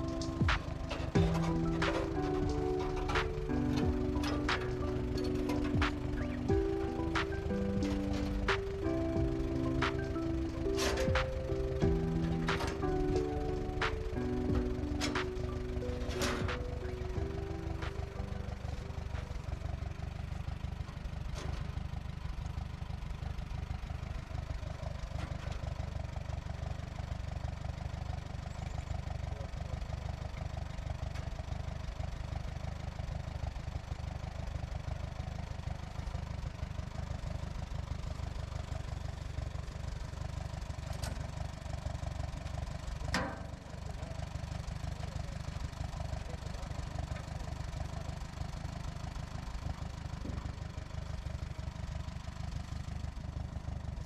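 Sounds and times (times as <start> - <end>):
gas engine running: 0.0 - 54.0.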